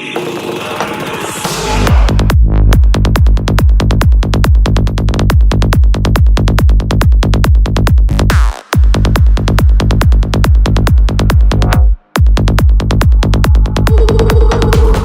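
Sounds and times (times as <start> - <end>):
electronic dance music: 0.0 - 2.2, 11.5 - 15.0.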